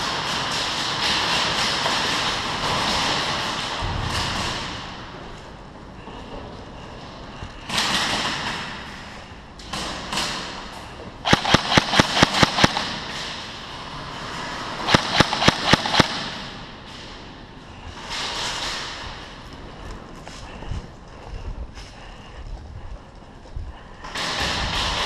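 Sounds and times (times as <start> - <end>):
airsoft gun rapid firing: 11.2 - 13.6, 14.8 - 16.7.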